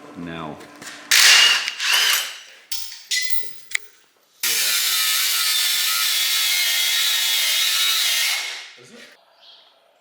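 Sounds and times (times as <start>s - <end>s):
power tool running: 1.1s - 2.5s, 4.4s - 8.8s
tool click: 2.7s - 3.9s.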